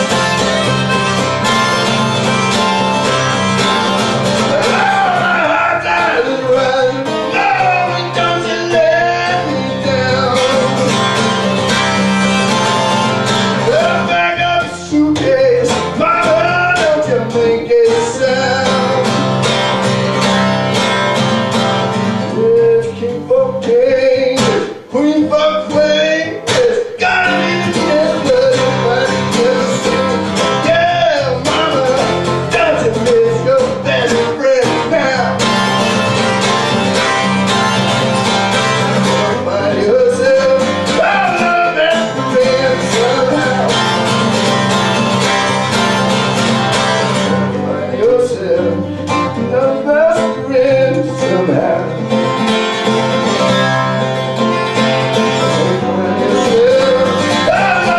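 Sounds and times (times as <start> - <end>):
acoustic blues band playing: 0.0 - 57.9
lead guitar melody: 0.0 - 57.9.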